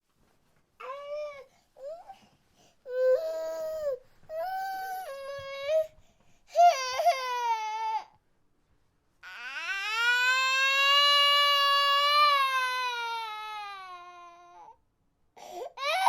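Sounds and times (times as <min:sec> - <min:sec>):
infant crying: 0:06.5 - 0:08.2, 0:09.2 - 0:14.8, 0:15.4 - 0:16.0.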